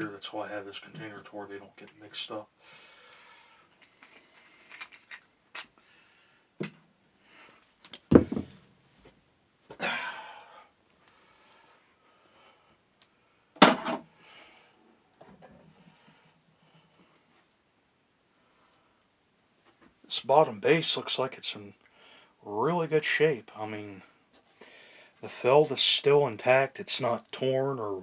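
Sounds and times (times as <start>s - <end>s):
loud thuds: 8.1s - 8.6s.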